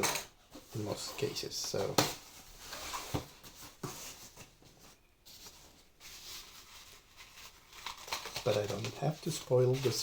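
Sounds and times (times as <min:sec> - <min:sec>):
packaging rustling: 0:05.3 - 0:10.0.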